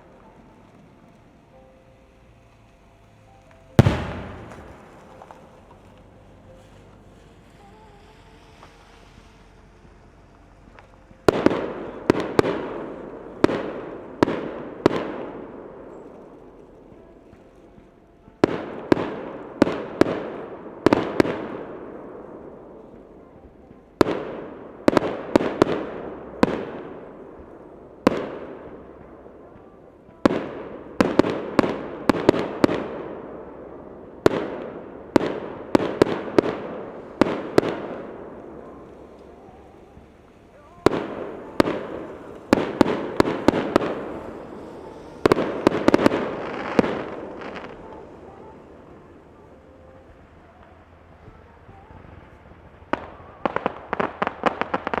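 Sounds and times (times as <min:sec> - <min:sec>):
firework shells bursting: 0:03.5 - 0:06.0, 0:34.1 - 0:49.5.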